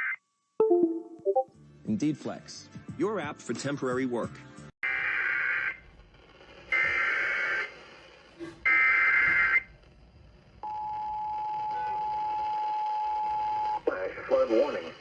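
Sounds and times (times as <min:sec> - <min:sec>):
two-tone attention signal: 0:00.6 - 0:01.5.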